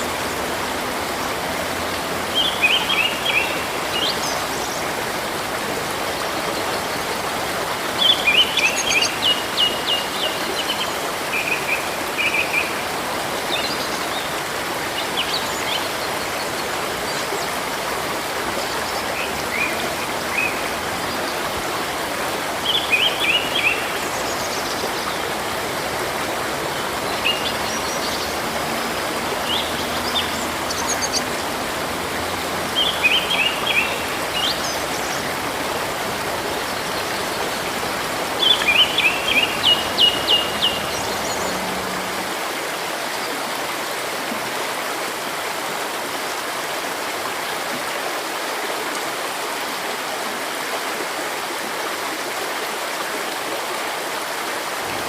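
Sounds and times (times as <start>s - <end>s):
birds chirping: 0.0s - 42.4s
river flowing: 0.0s - 55.0s.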